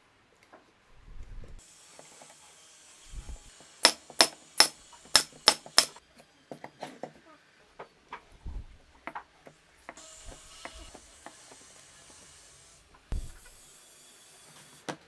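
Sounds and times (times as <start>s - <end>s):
sharp knocks: 3.8s - 6.0s.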